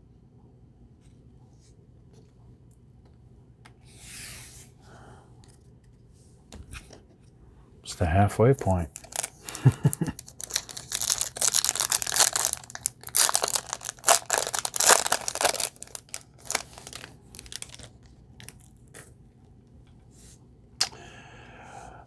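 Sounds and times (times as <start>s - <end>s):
cards and wrapper crinkling: 8.9s - 18.8s.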